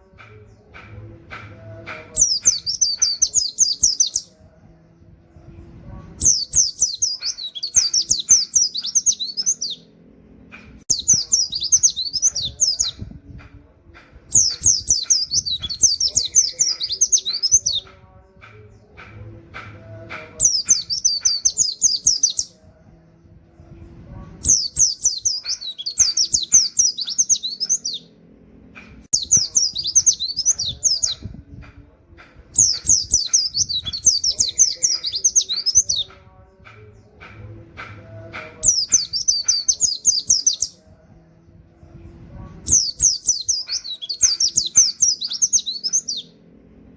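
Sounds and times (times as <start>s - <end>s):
bird singing fast high phrases: 2.2s - 4.3s, 6.2s - 9.8s, 10.9s - 13.1s, 14.3s - 17.9s, 20.4s - 22.5s, 24.4s - 28.1s, 29.1s - 31.3s, 32.6s - 36.1s, 38.6s - 40.8s, 42.7s - 46.3s.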